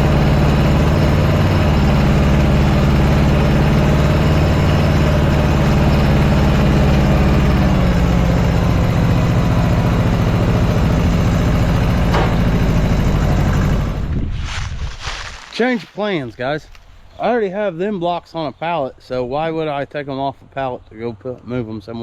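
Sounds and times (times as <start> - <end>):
tractor engine idling: 0.0 - 14.2.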